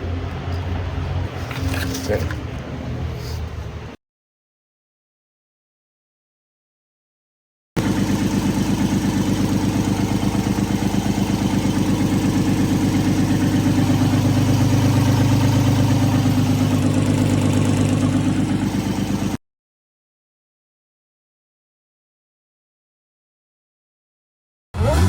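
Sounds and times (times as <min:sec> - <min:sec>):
car engine idling: 0:07.8 - 0:19.4.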